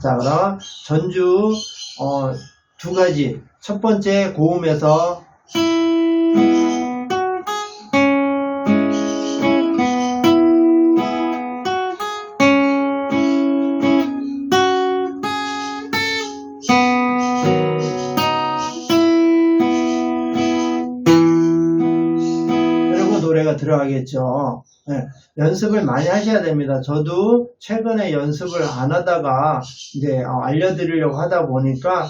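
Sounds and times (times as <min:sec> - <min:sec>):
acoustic guitar waltz melody: 0:05.5 - 0:23.3.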